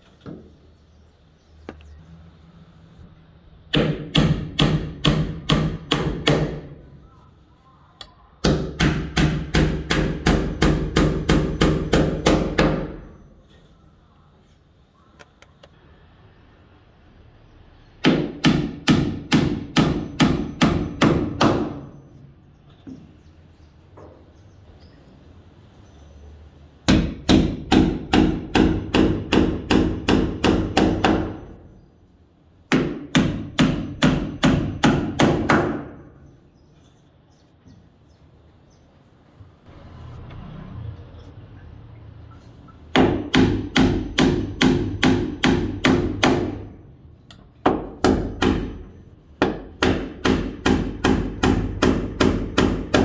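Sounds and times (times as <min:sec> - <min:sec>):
hammer driving nail into wood: 0:18.0 - 0:21.9, 0:42.9 - 0:46.6, 0:49.4 - 0:53.0.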